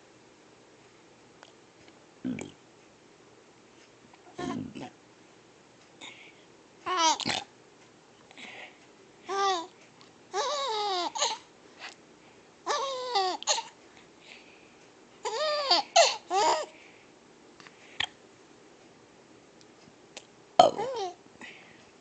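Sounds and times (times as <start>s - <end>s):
baby squealing laughter: 15.2s - 16.7s.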